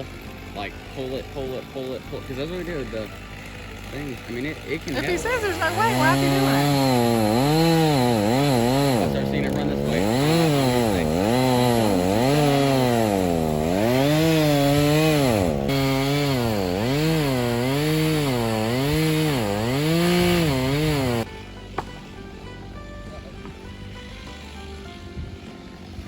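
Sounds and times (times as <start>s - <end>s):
chainsaw cutting wood: 0.0s - 26.0s.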